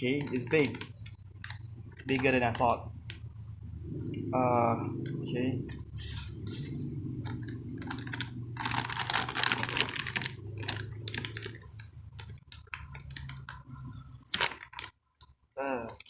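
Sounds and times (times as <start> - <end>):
packaging rustling: 0.0 - 3.2, 6.4 - 14.9
low steady hum: 0.0 - 14.9
small clicks and taps: 0.2 - 3.3.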